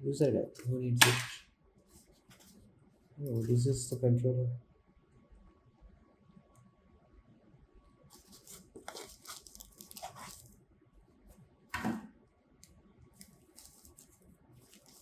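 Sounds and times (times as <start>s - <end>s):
packaging tearing and rustling: 8.1s - 10.6s, 13.2s - 15.0s
loud packaging rip: 8.2s - 10.5s.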